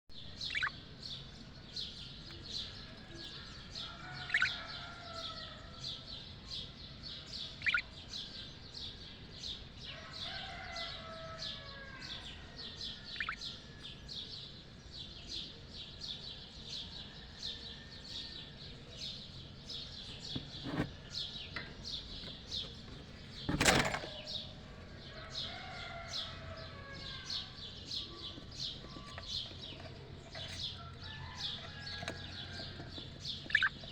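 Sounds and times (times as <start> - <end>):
budgerigars chirping and warbling: 0.4 - 0.8, 2.3 - 5.3, 7.4 - 8.3, 12.9 - 13.6, 25.2 - 33.9.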